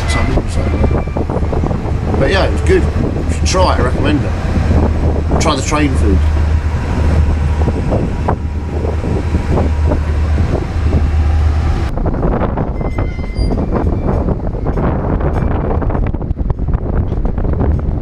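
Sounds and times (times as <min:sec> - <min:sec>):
train low rumble: 0:00.0 - 0:18.0
train clatter of rapid knocks: 0:12.2 - 0:18.0.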